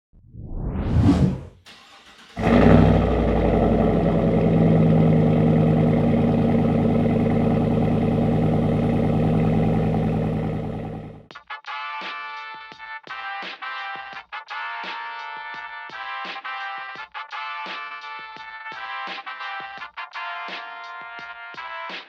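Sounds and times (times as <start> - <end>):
whoosh effect: 0.2 - 1.7
truck engine idling: 2.0 - 11.2.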